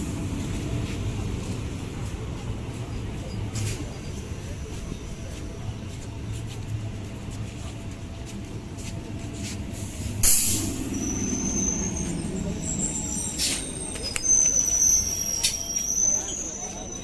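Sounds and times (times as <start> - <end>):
train low rumble: 0.0 - 17.0
high-pitched brake squealing: 2.8 - 5.9, 9.8 - 17.0
sharp hiss of air: 9.7 - 15.6.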